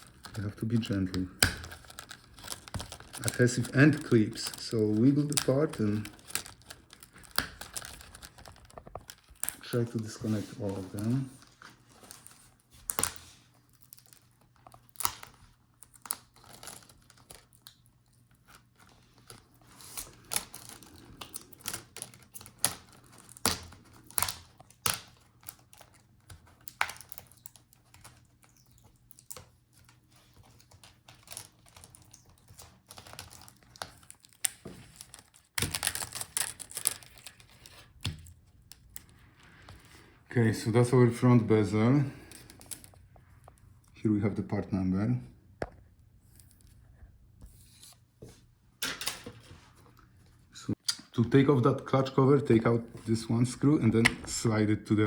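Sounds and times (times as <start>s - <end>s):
plastic crackling: 0.0s - 43.9s.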